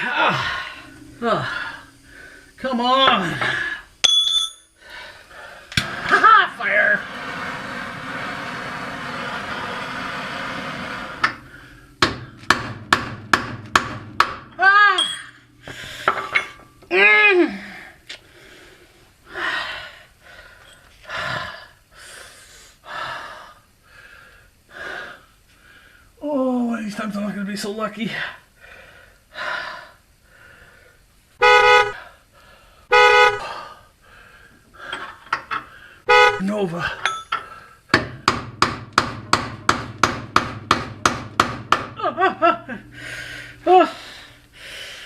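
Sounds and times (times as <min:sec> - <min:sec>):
man breathing heavily: 0:00.0 - 0:02.6, 0:04.8 - 0:05.8, 0:15.5 - 0:16.4, 0:17.5 - 0:26.2, 0:28.4 - 0:31.2, 0:31.9 - 0:36.1, 0:37.3 - 0:37.9, 0:42.8 - 0:45.0
hammer striking chisel on metal: 0:04.0 - 0:04.7, 0:12.0 - 0:15.3, 0:38.0 - 0:41.9.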